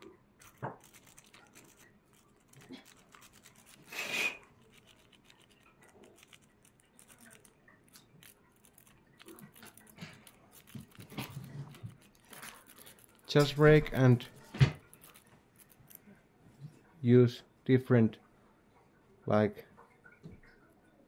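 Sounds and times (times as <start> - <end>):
rake scraping in keyway: 0.4 - 16.0.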